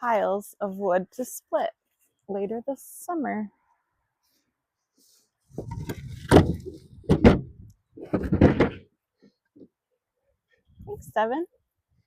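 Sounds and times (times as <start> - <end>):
logs knocking onto woodpile: 5.6 - 8.9.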